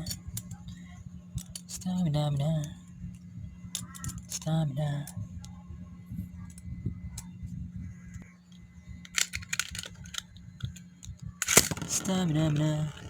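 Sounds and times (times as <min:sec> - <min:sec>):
steady low hum: 0:00.0 - 0:13.0
clicking and scraping: 0:01.4 - 0:01.7, 0:03.7 - 0:04.5, 0:08.1 - 0:13.0
plastic spinning top clicking: 0:11.4 - 0:13.0.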